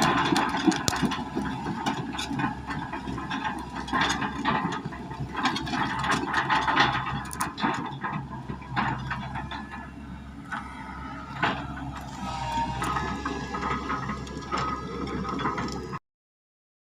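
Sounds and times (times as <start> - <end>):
engine hum: 0.0 - 16.0
steel tracks clanking: 0.0 - 16.0.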